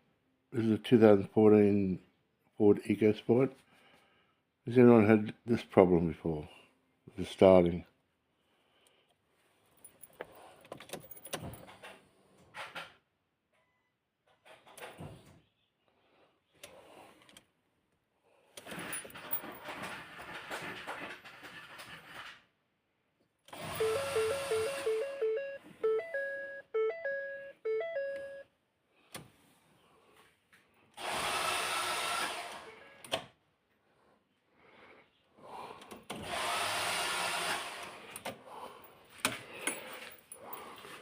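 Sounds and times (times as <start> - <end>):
starter motor whirring buzz: 23.5 - 25.1, 31.0 - 32.8, 36.2 - 38.2.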